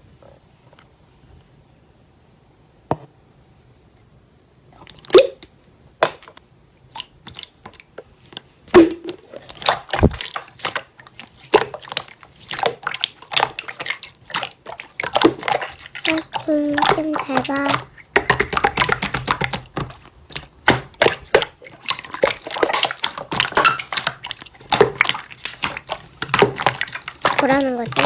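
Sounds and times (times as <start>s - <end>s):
slime clicking and popping: 6.9s - 28.0s.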